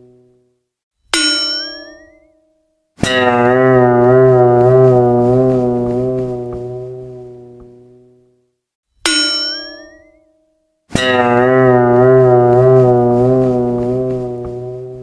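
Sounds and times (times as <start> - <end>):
metallic clang: 1.2 - 2.2
low wavering tone: 3.2 - 8.4, 11.0 - 15.0.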